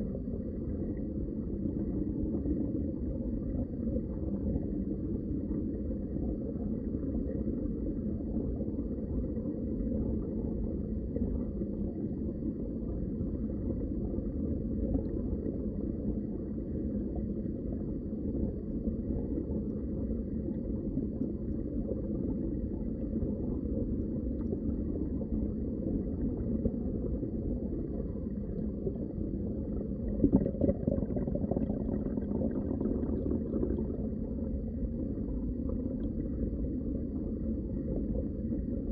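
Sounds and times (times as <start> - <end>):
underwater rush of water: 24.4 - 38.6.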